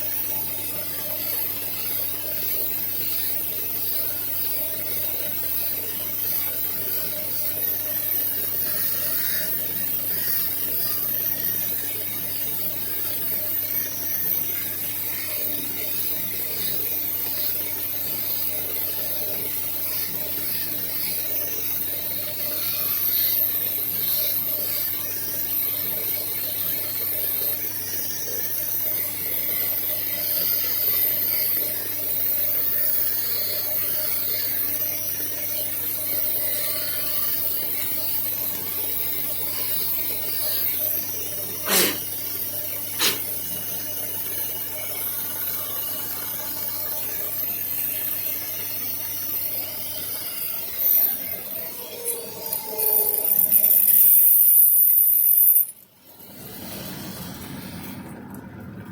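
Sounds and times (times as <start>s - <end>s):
tool scraping and grinding stone: 39.3s - 42.2s, 43.0s - 43.4s, 49.8s - 57.8s.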